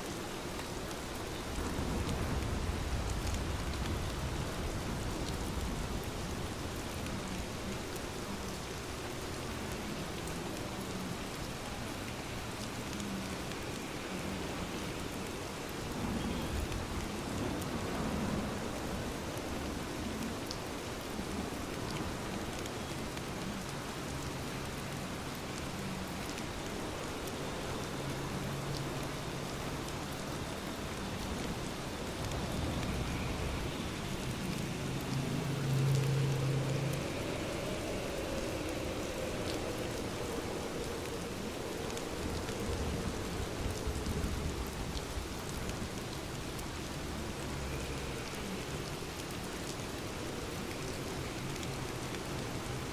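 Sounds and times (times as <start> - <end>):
steady rain: 0.0 - 52.9
low hum: 31.4 - 44.9.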